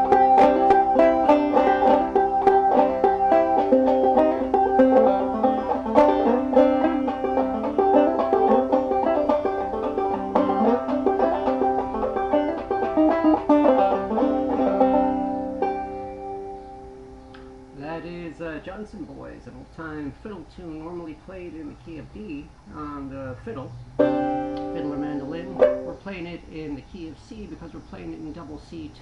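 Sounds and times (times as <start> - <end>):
banjo plucked melody: 0.0 - 16.7, 22.8 - 26.1.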